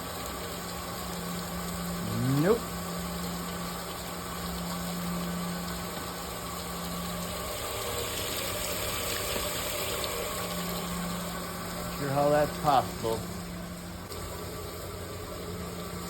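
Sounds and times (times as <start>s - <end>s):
machinery hum: 0.0s - 16.0s.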